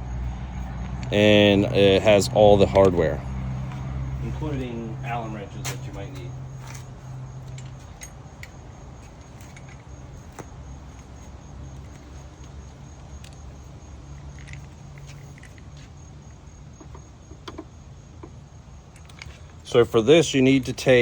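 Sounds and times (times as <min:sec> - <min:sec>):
low hum: 0:00.0 - 0:15.8
small metal hardware clinking: 0:06.6 - 0:11.1, 0:13.2 - 0:15.9, 0:18.9 - 0:19.7.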